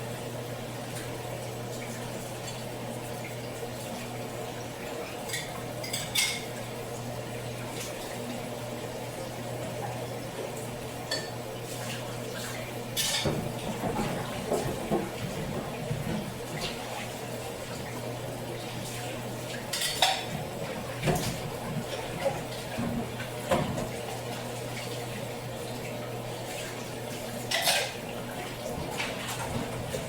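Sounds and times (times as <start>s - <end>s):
dishes and utensils clattering: 5.3s - 6.5s, 13.0s - 16.8s, 19.7s - 20.4s, 27.5s - 28.0s.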